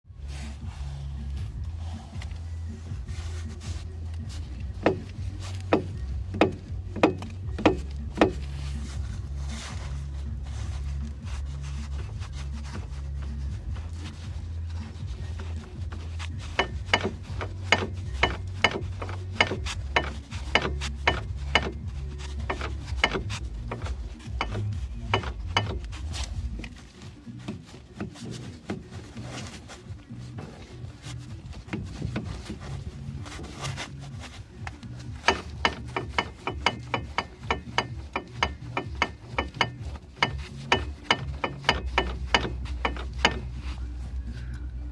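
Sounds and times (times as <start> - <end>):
low engine hum: 0.1 - 44.9
driveshaft joint knocking: 4.8 - 8.5, 16.4 - 21.8, 22.4 - 25.9, 35.2 - 43.6.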